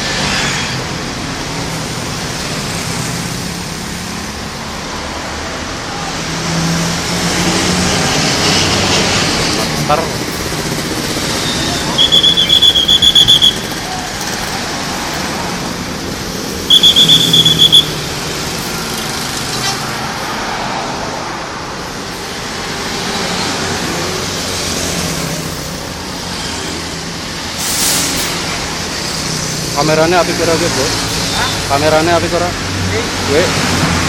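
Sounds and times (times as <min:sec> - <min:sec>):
buses passing in traffic: 0:00.0 - 0:34.0
shrill pulsing whistle tone: 0:11.4 - 0:14.1, 0:16.7 - 0:18.0
short hiss: 0:27.6 - 0:28.4.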